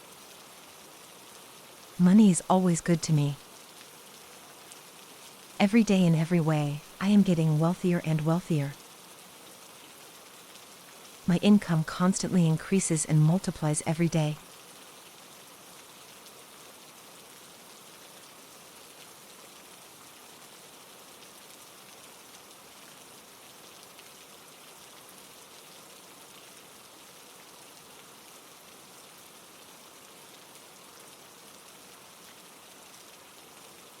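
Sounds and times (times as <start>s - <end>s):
steady rainfall: 0.0s - 34.0s.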